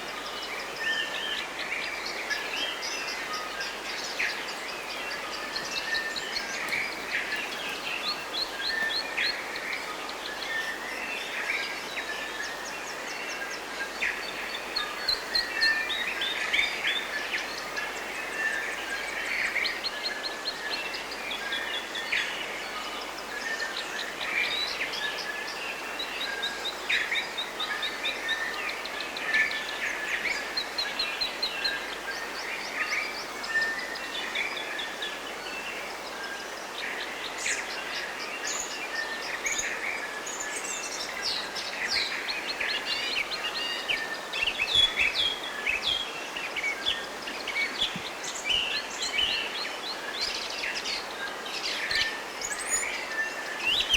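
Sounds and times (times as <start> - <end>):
birds singing and chirping: 24.1 - 53.9.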